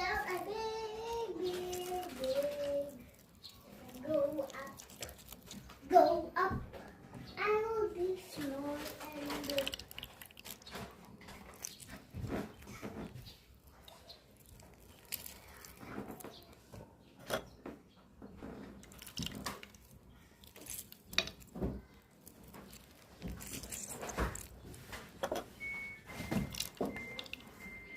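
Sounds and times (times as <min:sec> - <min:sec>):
utensils being handled: 0:22.2 - 0:27.9
faint steady high tone: 0:25.6 - 0:27.9.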